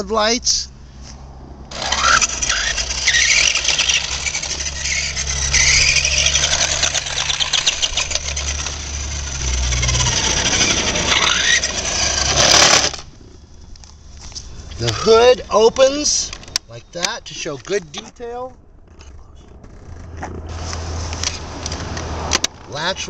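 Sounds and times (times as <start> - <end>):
toy car motor whirring: 1.7 - 13.4.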